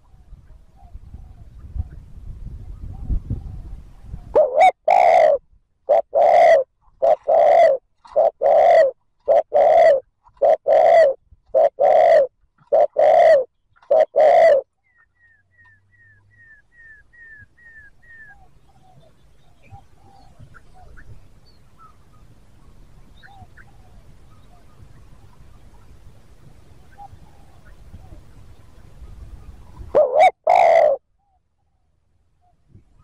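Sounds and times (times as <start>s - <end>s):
dove cooing rapidly: 2.7s - 14.7s, 29.4s - 31.0s.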